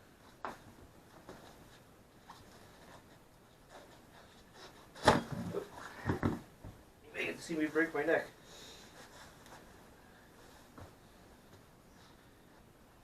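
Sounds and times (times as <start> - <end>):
thumps and knocks: 5.0 - 6.8.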